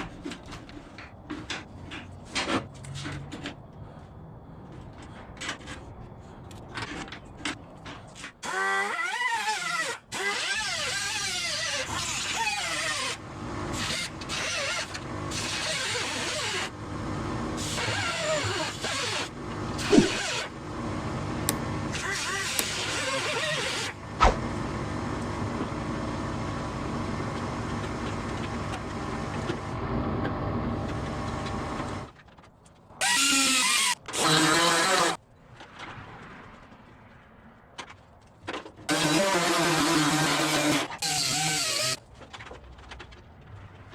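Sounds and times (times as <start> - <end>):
power tool cutting sheet metal: 8.4 - 16.8, 17.6 - 20.6, 21.9 - 24.0, 33.0 - 35.2, 38.9 - 42.0.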